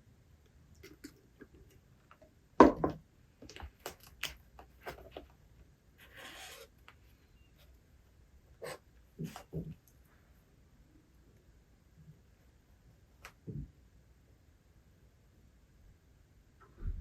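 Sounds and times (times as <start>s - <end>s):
knock on desk: 2.6s - 3.0s.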